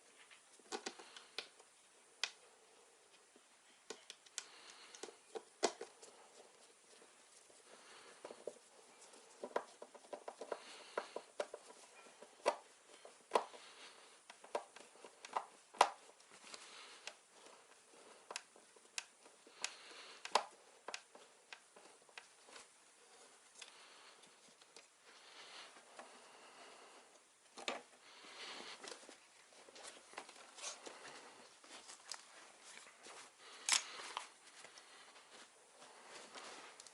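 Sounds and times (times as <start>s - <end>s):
light clicks and taps from handling parts: 3.1s - 13.6s, 14.2s - 22.7s
soft rustling: 4.4s - 36.9s.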